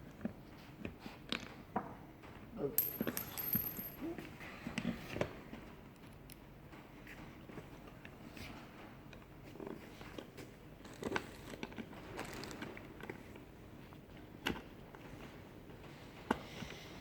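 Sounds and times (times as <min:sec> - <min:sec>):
metal hardware clinking: 0:02.8 - 0:04.1.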